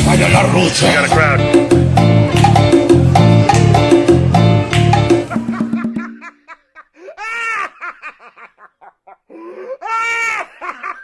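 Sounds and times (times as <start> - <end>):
high-pitched laughter: 5.6 - 11.0.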